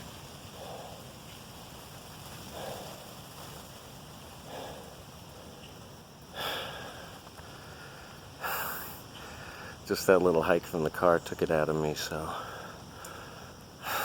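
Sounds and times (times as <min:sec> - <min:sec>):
person breathing heavily: 0:00.6 - 0:01.1, 0:02.5 - 0:03.1, 0:04.4 - 0:05.7, 0:06.3 - 0:09.8, 0:12.2 - 0:14.0.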